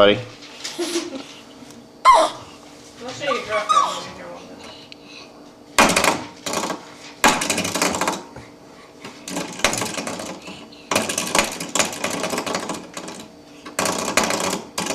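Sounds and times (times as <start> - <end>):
spring doorstop buzzing rattle: 5.8 - 14.9.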